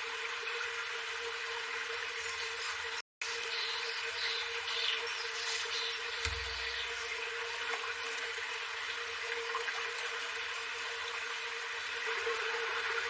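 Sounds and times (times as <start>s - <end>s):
running water rushing: 1.6s - 9.4s
dull thump: 6.2s - 7.0s.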